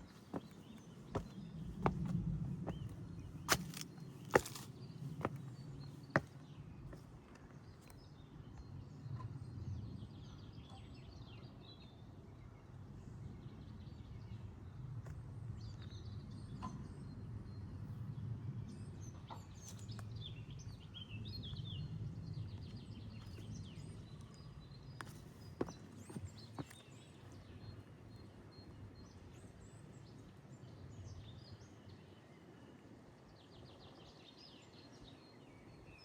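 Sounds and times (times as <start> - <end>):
small birds chirping: 0.0 - 8.4, 19.6 - 30.0.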